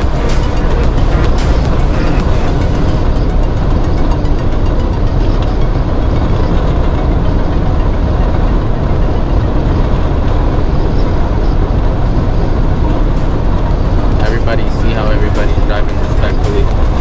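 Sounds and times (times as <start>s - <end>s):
car cabin road and engine noise: 0.0s - 17.0s.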